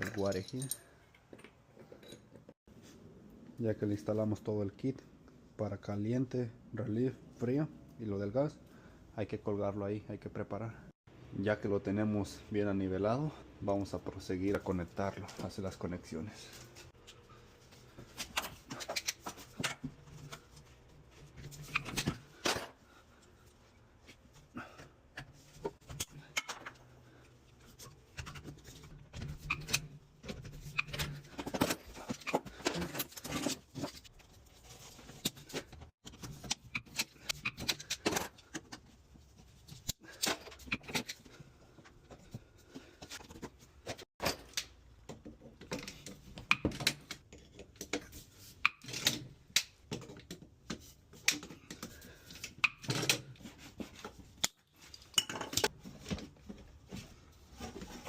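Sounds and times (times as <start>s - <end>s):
metal pipe fittings clinking: 0.0s - 1.0s.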